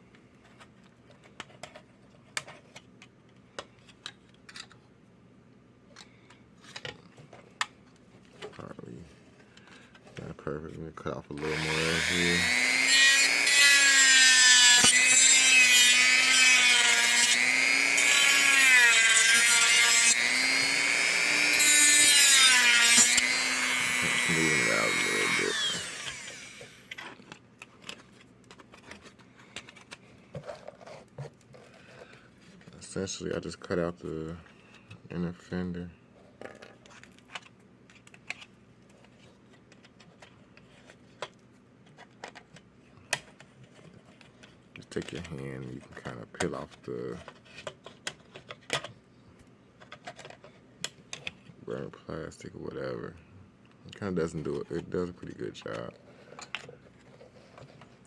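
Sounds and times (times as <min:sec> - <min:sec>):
faint room noise: 0:00.0 - 0:17.4, 0:21.4 - 0:58.0
power tool motor whine: 0:11.4 - 0:26.9
blade cutting plastic: 0:11.4 - 0:27.2.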